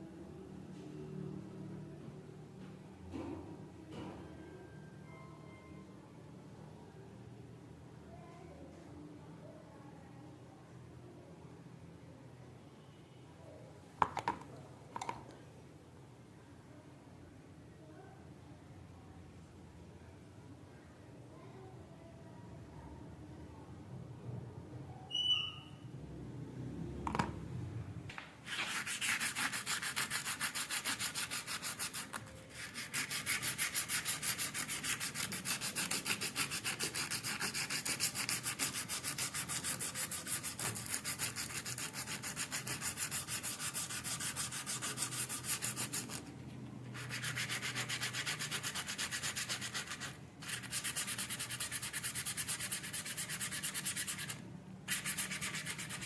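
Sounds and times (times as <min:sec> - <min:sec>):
sanding metal: 0:28.5 - 0:46.2, 0:47.0 - 0:56.0.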